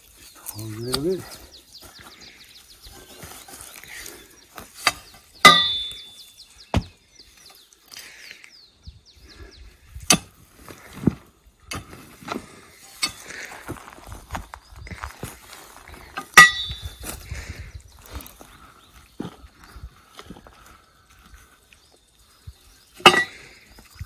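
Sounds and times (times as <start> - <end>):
tool striking stone and wood: 0.5 - 1.3, 4.6 - 7.0, 10.0 - 13.4, 16.2 - 16.9, 23.0 - 23.5
loud metallic clank ringing: 5.5 - 6.0.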